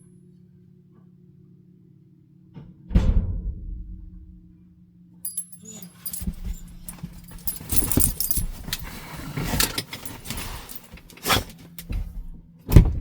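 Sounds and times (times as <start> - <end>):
knocks: 2.6 - 4.3
metallic jingling and clattering: 5.2 - 12.3.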